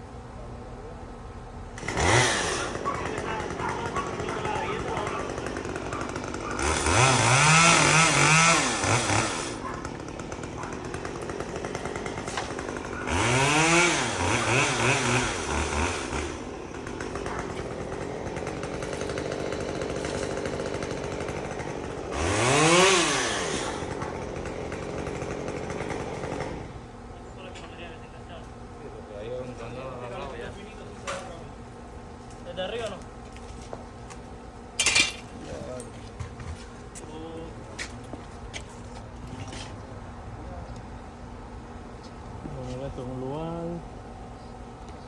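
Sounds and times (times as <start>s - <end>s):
chainsaw idling and revving: 1.8s - 26.9s.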